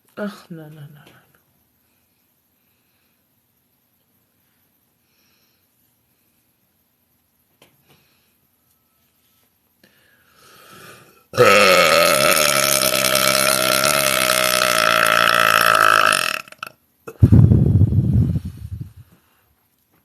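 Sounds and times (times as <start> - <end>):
woman belching: 11.4 - 17.2.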